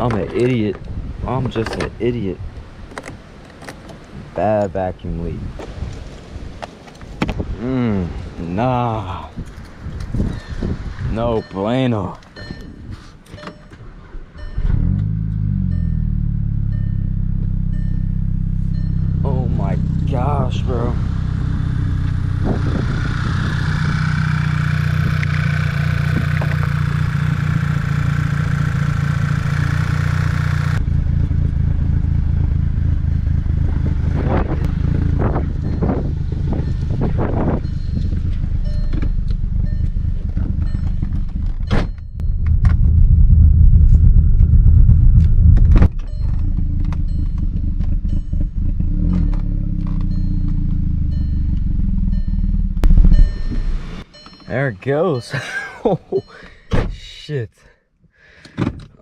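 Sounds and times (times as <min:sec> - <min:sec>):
engine knocks: 0:21.2 - 0:53.8
car engine idling roughly: 0:24.5 - 0:34.0.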